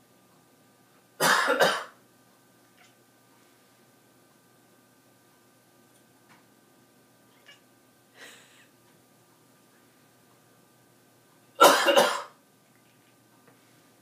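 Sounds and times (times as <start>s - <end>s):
person coughing: 1.2s - 2.0s, 11.6s - 12.4s.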